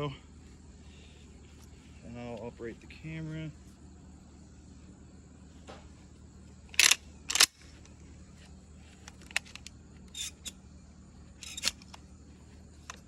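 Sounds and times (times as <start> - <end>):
handling clicks and rattles: 6.7 - 10.6, 11.3 - 12.1, 12.8 - 13.0
shotgun slide racking: 6.8 - 7.6.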